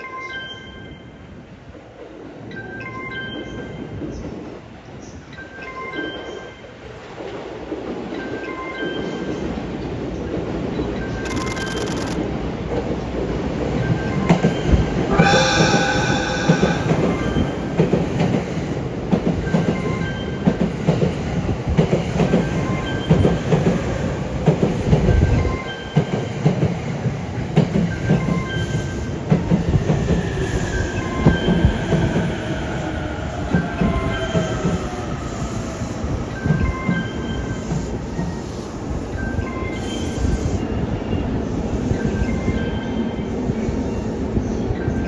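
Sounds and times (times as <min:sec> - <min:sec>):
train whine falling in pitch: 0:14.3 - 0:18.4
train horn: 0:15.0 - 0:17.9.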